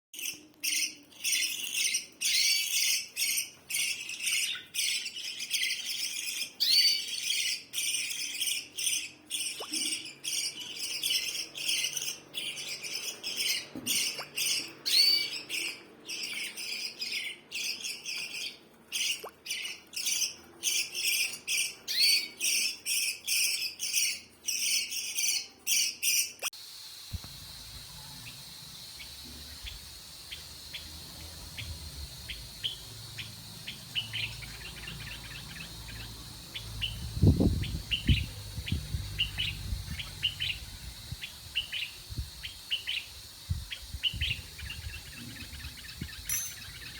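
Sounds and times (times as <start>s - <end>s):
birds chirping: 0.2s - 26.5s, 27.1s - 46.9s
insects chirring: 26.6s - 46.9s.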